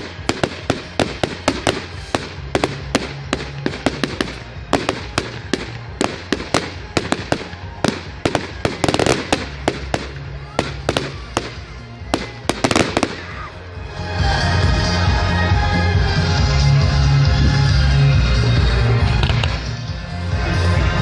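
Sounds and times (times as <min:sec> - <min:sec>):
fireworks bangs and crackles: 0:00.0 - 0:13.5
music playing: 0:00.0 - 0:21.0.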